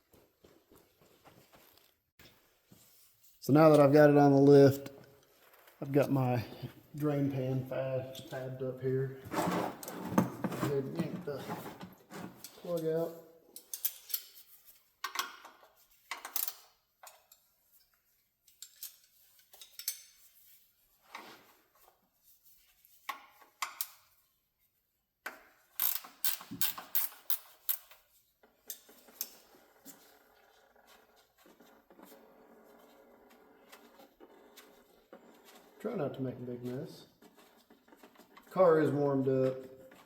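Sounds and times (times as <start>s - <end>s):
wrench clicking and scraping metal: 13.6s - 14.4s, 25.7s - 28.0s.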